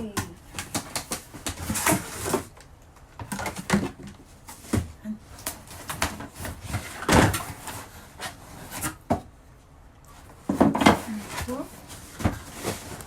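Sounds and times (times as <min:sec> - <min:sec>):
cardboard box knocks and rustles: 0:10.4 - 0:13.0.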